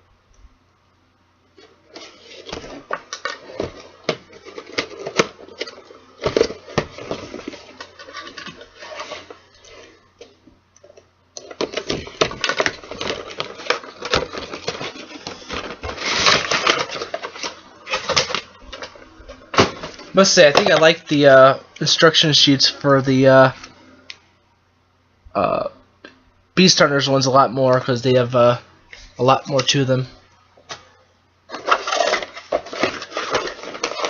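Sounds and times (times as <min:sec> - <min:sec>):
packaging rustling and scraping: 0:01.6 - 0:21.1, 0:30.7 - 0:34.0.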